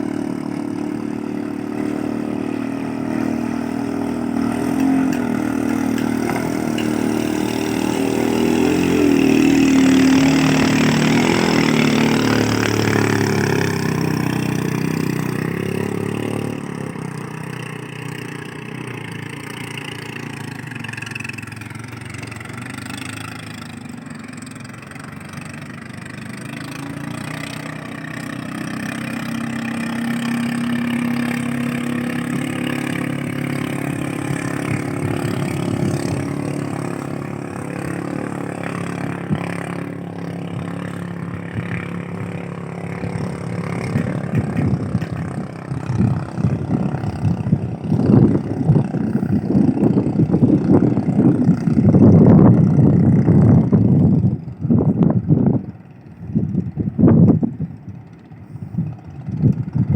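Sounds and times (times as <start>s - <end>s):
boat engine running: 0.0s - 59.9s
wind buffeting microphone: 3.5s - 16.9s, 25.6s - 59.9s.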